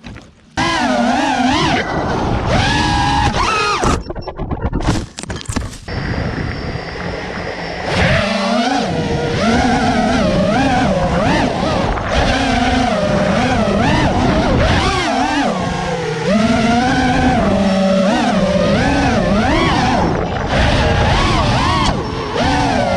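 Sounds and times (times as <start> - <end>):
drone motors whining: 0.1 - 22.9.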